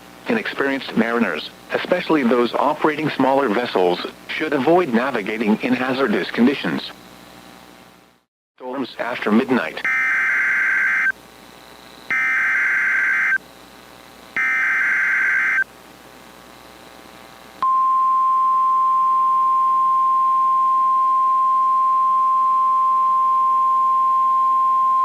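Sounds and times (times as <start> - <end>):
loud buzzing data bursts: 9.0 - 15.7
steady single-pitch alarm tone: 9.8 - 11.2, 12.0 - 13.4, 14.4 - 15.7.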